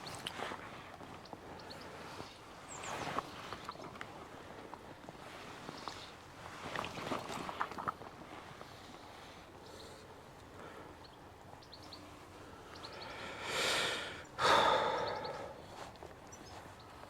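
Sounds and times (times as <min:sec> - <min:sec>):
faint bird chirps: 0:10.9 - 0:13.4, 0:14.1 - 0:17.0
person breathing: 0:12.4 - 0:16.0.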